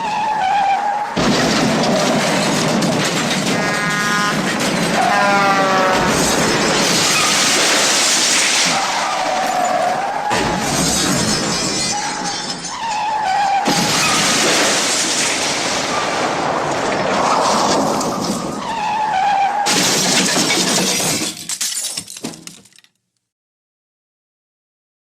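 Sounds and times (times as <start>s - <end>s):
glass shattering and debris breaking: 1.2s - 5.0s, 6.3s - 17.0s, 19.7s - 23.0s.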